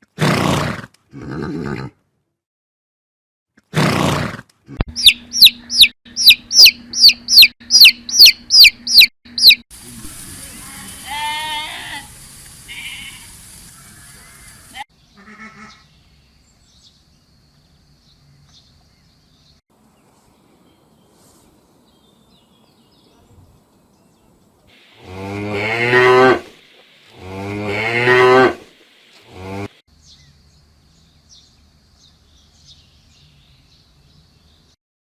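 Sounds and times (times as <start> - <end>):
cow mooing: 25.0 - 29.7.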